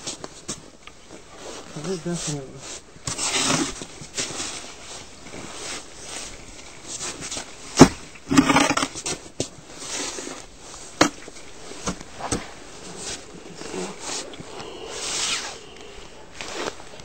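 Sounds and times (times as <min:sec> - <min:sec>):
snow shovel scraping snow: 0:01.4 - 0:07.4, 0:08.3 - 0:09.2, 0:09.8 - 0:17.0
shovel knocks: 0:07.8 - 0:08.9.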